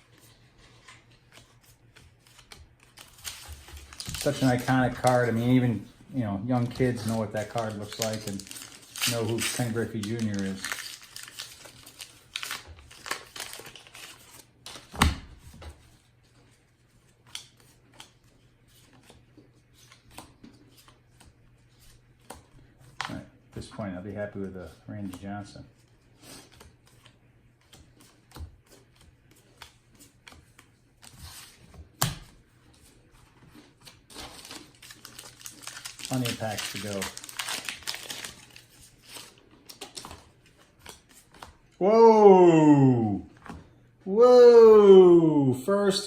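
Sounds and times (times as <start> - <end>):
foil wrapper crinkling and tearing: 2.3 - 5.8, 6.5 - 14.9, 33.8 - 40.1.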